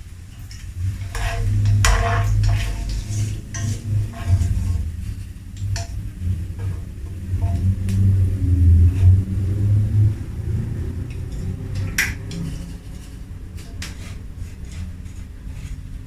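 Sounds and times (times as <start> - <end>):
low rumble: 0.0 - 16.0
kitchen utensils and dishes clinking: 0.3 - 5.0.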